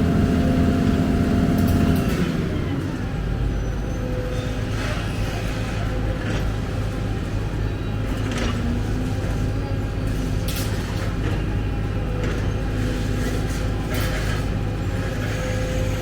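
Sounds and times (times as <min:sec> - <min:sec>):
heavy diesel engine running: 0:00.0 - 0:10.2.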